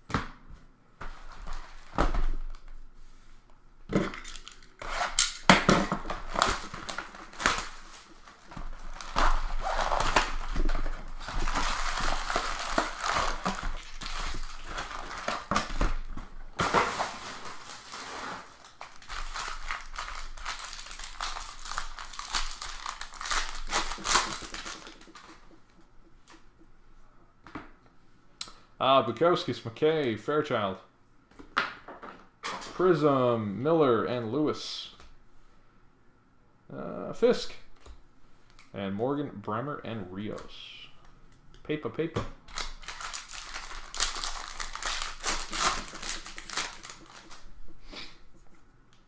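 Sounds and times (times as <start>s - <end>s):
foil wrappers tearing and crinkling: 4.3s - 25.6s, 42.5s - 47.6s.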